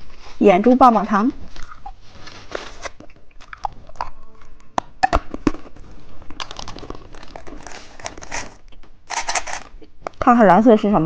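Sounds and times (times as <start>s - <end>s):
candy crunching: 1.5s - 10.0s.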